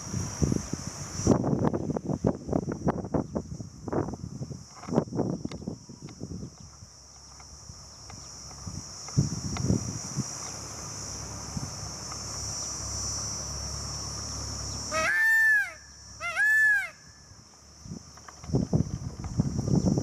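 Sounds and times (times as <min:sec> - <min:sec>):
high insect drone: 0:00.0 - 0:20.0
peacock wailing call: 0:14.9 - 0:17.2.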